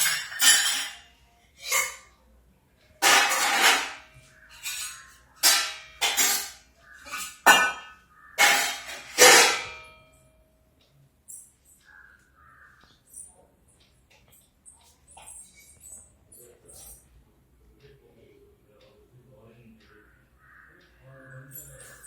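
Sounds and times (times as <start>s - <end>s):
dishes and utensils clattering: 0.0s - 2.1s, 2.9s - 10.1s, 21.5s - 22.0s.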